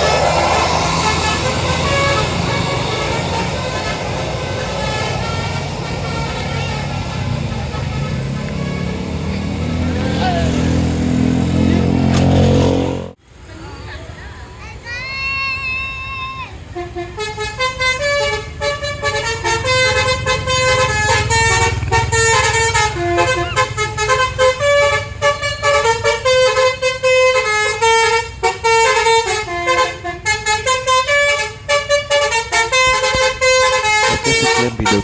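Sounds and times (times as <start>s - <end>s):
musical bus horn playing a tune: 0.0s - 13.2s, 16.6s - 35.0s
bus engine rumbling: 0.0s - 35.0s.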